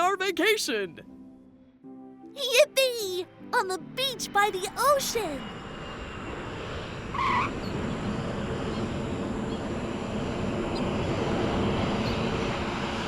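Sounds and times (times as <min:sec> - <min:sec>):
jet engines rushing: 0:05.5 - 0:13.0.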